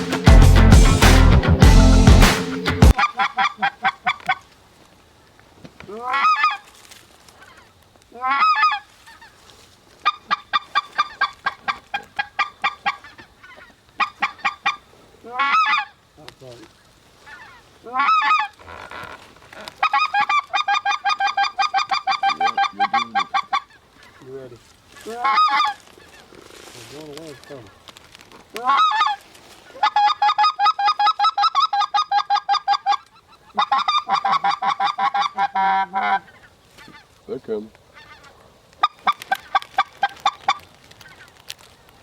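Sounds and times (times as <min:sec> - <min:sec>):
goose clucking: 0:02.9 - 0:04.4, 0:08.2 - 0:09.3, 0:10.0 - 0:15.9, 0:17.2 - 0:26.4, 0:28.5 - 0:37.1
goose honks rising in pitch: 0:19.8 - 0:23.7.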